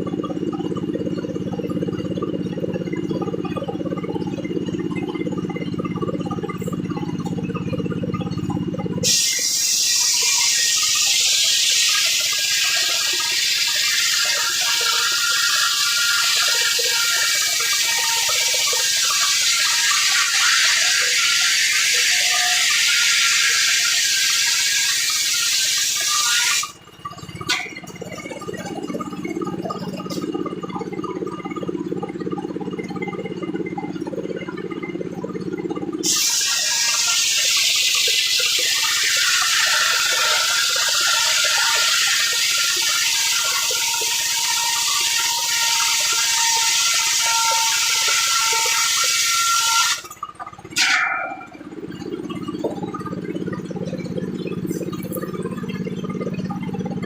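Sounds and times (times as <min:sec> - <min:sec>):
saw running with rattling hum: 0:00.0 - 0:57.0
circular saw cutting wood: 0:09.0 - 0:26.8, 0:36.0 - 0:50.2.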